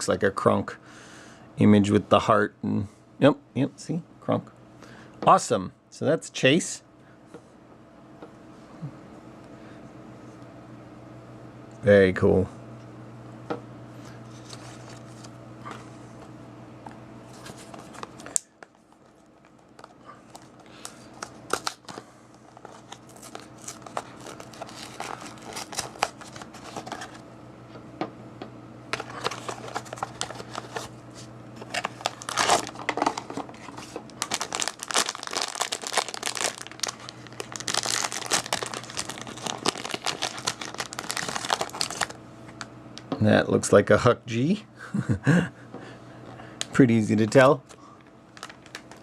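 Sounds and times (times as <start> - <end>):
steady low hum: 0.0 - 49.0
packaging tearing and crinkling: 17.4 - 27.2, 29.0 - 30.9, 31.6 - 42.2, 48.4 - 49.0.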